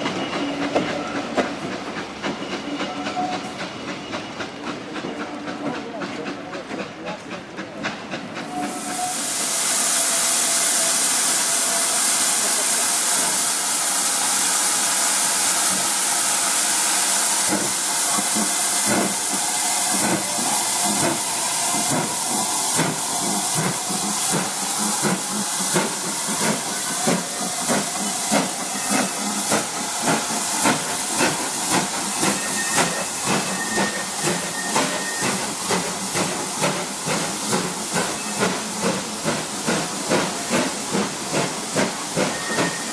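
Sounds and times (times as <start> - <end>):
steam locomotive hissing: 0.0 - 42.9.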